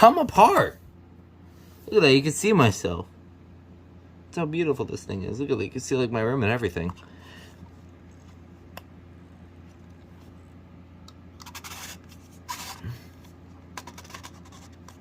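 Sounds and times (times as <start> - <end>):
faint low hum: 0.0 - 15.0
scraping and rubbing: 11.4 - 13.0, 13.7 - 15.0.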